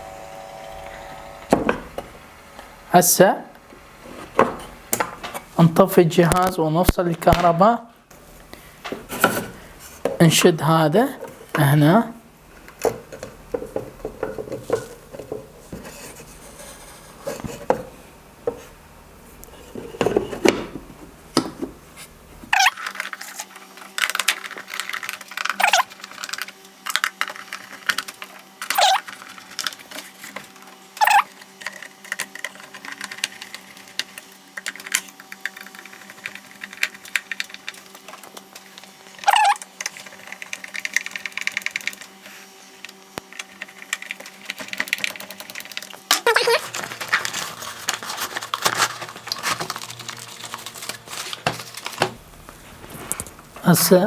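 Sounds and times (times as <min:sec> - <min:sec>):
faint steady hum: 0:00.0 - 0:22.5, 0:46.4 - 0:54.0.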